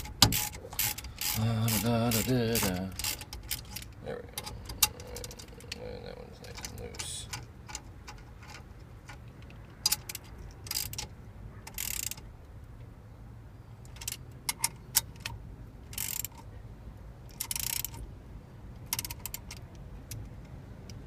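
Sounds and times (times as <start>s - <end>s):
steady low hum: 0.0s - 8.1s.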